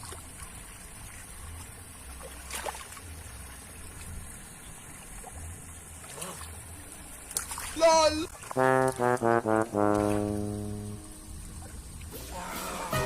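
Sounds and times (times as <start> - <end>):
sharp splash: 0.0 - 3.2, 6.0 - 6.6, 7.2 - 13.0
muddy water sloshing: 0.0 - 12.9.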